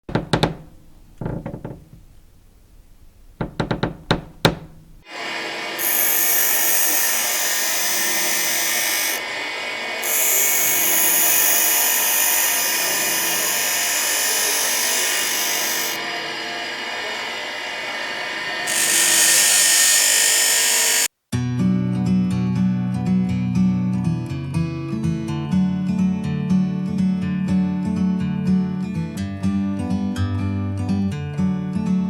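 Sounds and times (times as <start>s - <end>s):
sharp knocks: 0.0s - 5.1s
power tool running: 3.4s - 21.1s.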